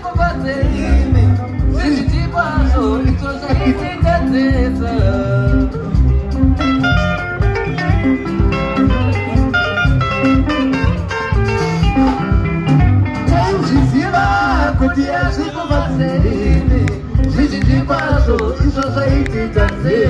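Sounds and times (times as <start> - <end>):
bass guitar: 0.0 - 20.0
drums: 0.0 - 20.0
lead guitar picking: 0.0 - 20.0
singing: 13.3 - 20.0.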